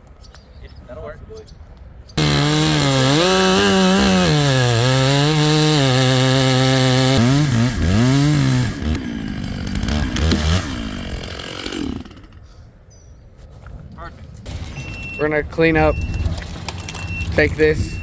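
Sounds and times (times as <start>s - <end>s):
chainsaw cutting log: 2.2s - 12.4s.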